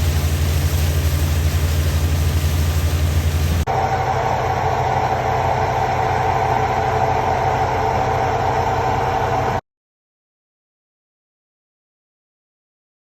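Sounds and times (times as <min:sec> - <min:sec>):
heavy engine rumbling: 0:00.0 - 0:09.6.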